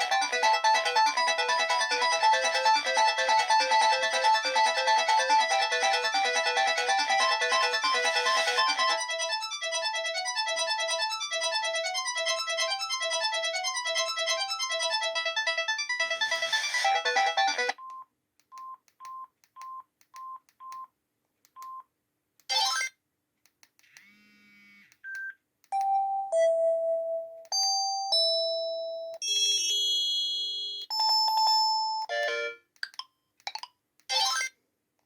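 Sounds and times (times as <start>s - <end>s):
polyphonic ringtone: 0.0s - 17.7s, 25.8s - 32.6s.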